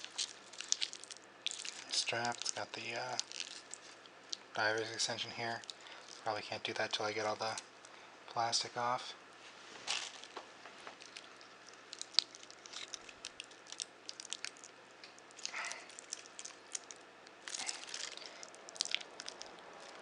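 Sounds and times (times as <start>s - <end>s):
plastic wrap crinkling: 0.0s - 8.0s, 9.4s - 20.0s.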